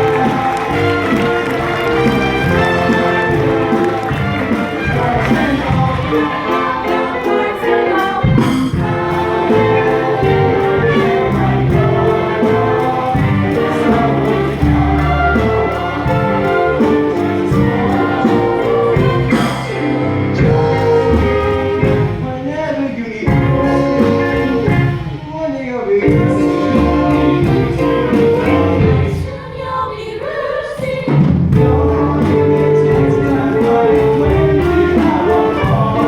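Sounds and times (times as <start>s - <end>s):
singing with instrumental accompaniment: 0.0s - 36.0s.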